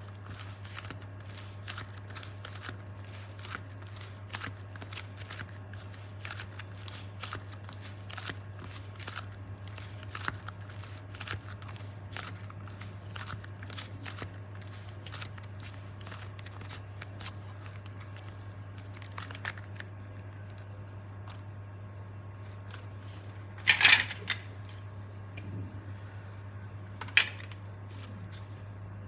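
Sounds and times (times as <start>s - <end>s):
steady low hum: 0.0s - 29.0s
objects clattering: 23.6s - 24.5s.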